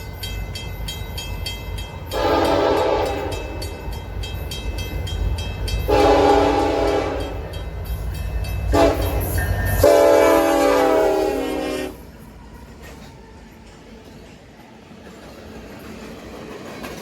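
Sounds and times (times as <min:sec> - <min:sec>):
diesel locomotive engine rumble: 0:00.0 - 0:17.0
locomotive air horn blasts: 0:02.1 - 0:03.4, 0:05.9 - 0:07.4, 0:08.7 - 0:12.0.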